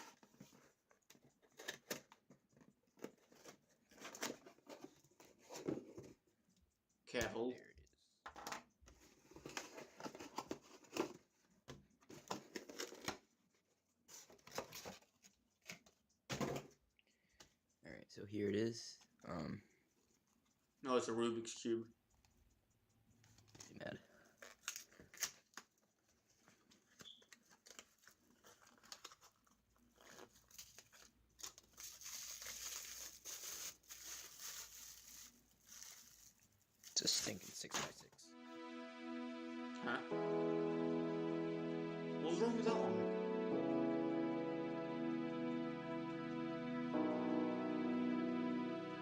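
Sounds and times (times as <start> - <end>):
packaging rustling and crackling: 26.8 - 37.8.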